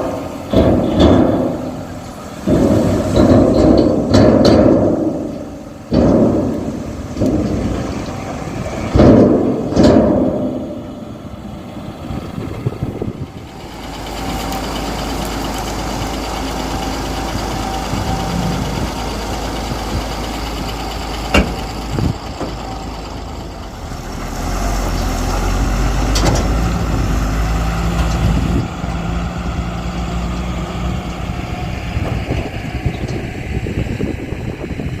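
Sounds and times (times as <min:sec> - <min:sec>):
loud knocks: 0:00.0 - 0:11.0
heavy diesel machinery running: 0:00.0 - 0:35.0.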